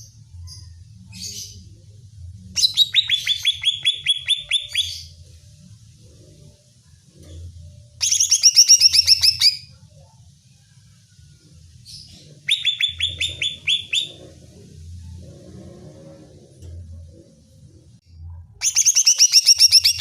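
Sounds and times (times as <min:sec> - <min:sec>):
faint low hum: 0:00.0 - 0:20.0
bird trilling: 0:08.0 - 0:09.6, 0:12.4 - 0:14.4, 0:18.6 - 0:20.0.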